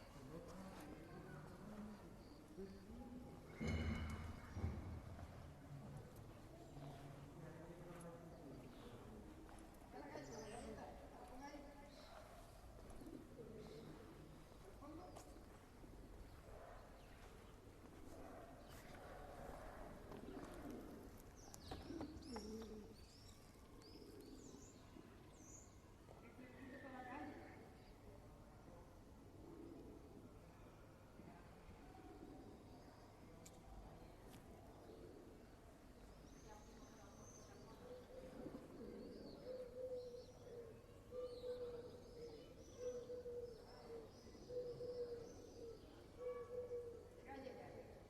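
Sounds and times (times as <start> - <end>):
small birds chirping: 0.0 - 28.2, 32.5 - 48.0
pigeon cooing: 12.8 - 14.6, 18.0 - 23.2, 29.3 - 30.6, 37.5 - 47.2.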